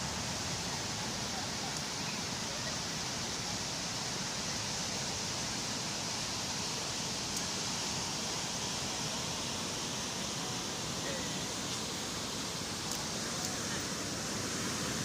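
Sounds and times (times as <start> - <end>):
calm sea waves on a beach: 0.0 - 15.0.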